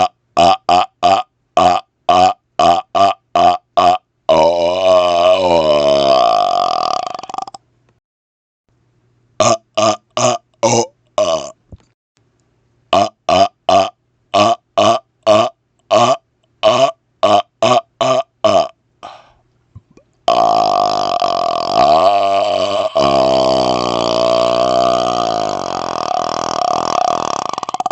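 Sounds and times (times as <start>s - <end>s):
man burping: 0.0s - 7.6s, 9.4s - 11.6s, 12.9s - 27.9s.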